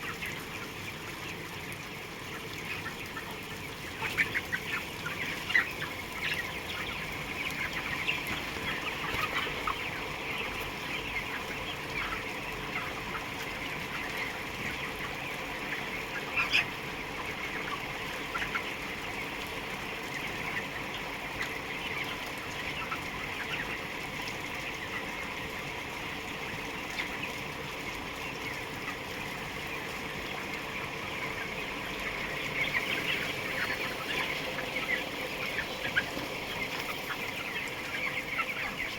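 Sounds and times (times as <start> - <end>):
flock of chickens chattering: 0.0 - 38.9.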